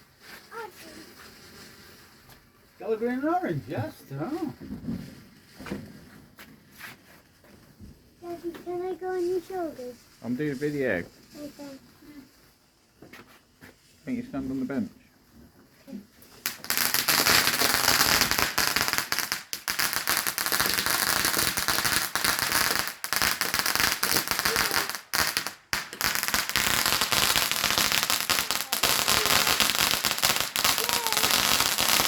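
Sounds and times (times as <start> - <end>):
fireworks crackling: 8.3 - 12.3, 16.2 - 32.0.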